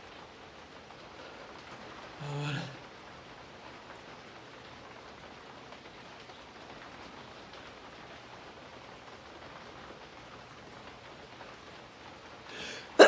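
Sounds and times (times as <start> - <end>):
steady rain falling: 0.0 - 13.0.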